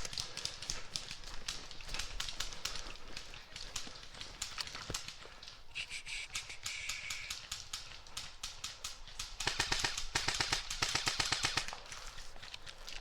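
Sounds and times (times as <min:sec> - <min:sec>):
airsoft guns popping: 0:00.0 - 0:05.6, 0:06.4 - 0:13.0
airsoft gun full-auto burst: 0:09.3 - 0:12.0.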